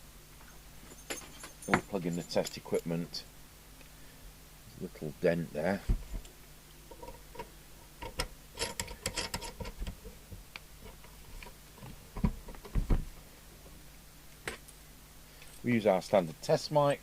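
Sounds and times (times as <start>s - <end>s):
dull thumps: 11.8s - 13.2s.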